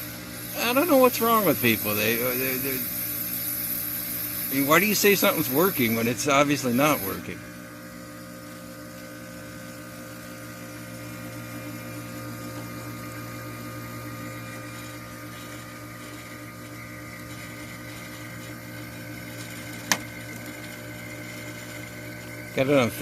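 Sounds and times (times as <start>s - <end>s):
air conditioner compressor hum: 0.0s - 23.0s.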